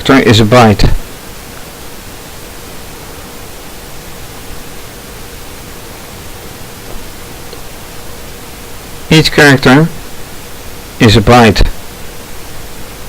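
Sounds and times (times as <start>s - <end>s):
background hiss: 0.0s - 13.0s
faint hum-like tone: 0.0s - 13.0s.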